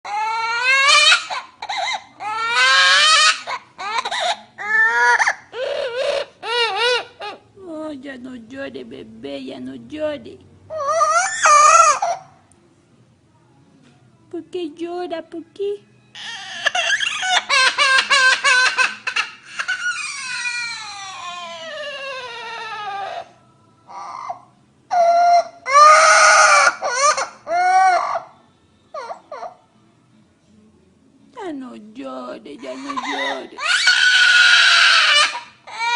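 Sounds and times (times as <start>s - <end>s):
parrot mimicking crying baby: 0.0s - 7.5s, 10.7s - 12.4s, 16.1s - 29.7s, 32.6s - 35.9s.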